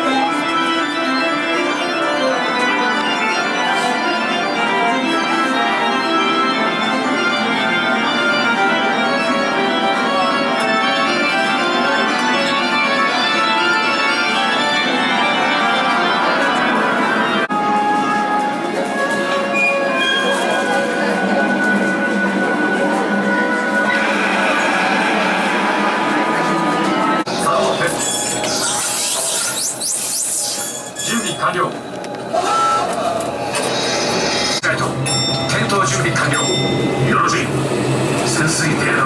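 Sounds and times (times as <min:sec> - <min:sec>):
organ chords: 0:00.0 - 0:19.7, 0:20.6 - 0:29.0.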